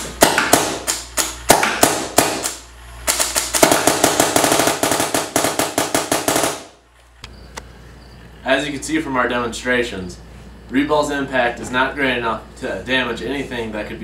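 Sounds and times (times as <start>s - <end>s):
paintball gun firing: 0.2s - 6.8s.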